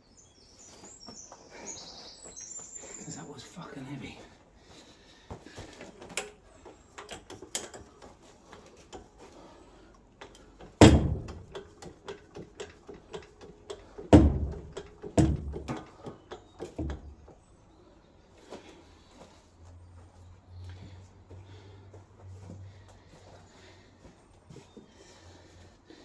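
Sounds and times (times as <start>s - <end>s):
metal knocks and clatter: 10.2s - 17.3s
loud clunks: 10.6s - 17.2s.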